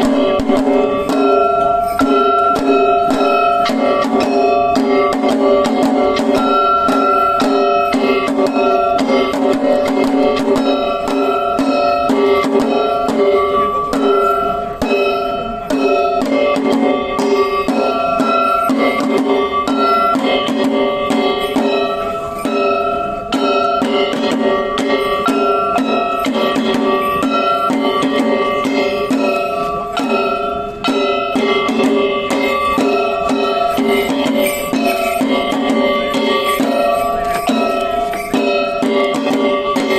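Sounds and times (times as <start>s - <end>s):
drums and percussion beating: 0.0s - 39.9s
sustained ringing tones: 0.0s - 39.9s.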